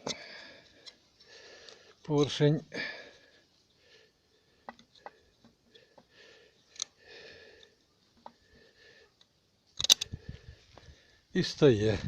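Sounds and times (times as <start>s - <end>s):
metal clicks and light scraping: 4.6s - 6.1s, 6.7s - 7.0s, 9.2s - 10.2s.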